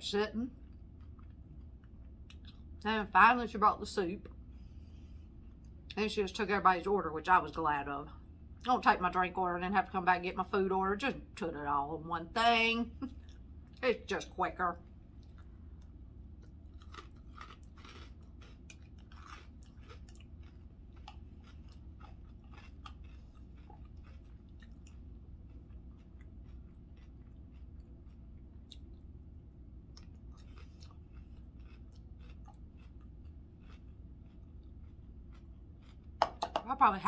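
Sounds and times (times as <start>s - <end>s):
steady low hum: 0.0s - 37.0s
person chewing and crunching: 0.6s - 2.8s, 14.8s - 36.9s.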